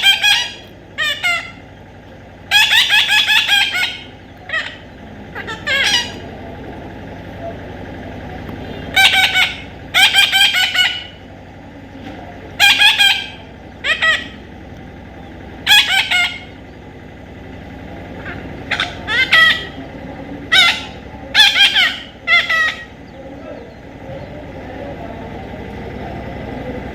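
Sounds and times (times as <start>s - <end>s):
parrot screeching: 0.0s - 1.6s, 2.5s - 6.2s, 8.9s - 11.2s, 12.6s - 14.4s, 15.6s - 16.6s, 18.2s - 19.8s, 20.5s - 22.9s.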